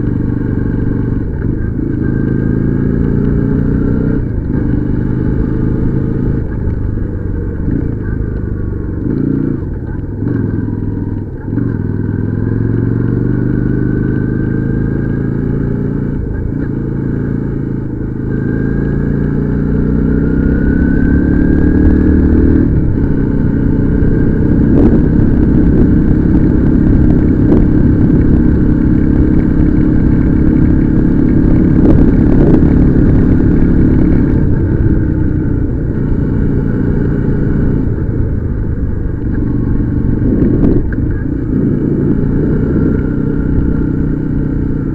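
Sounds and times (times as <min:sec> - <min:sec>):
motorcycle engine accelerating: 0:00.0 - 0:44.9.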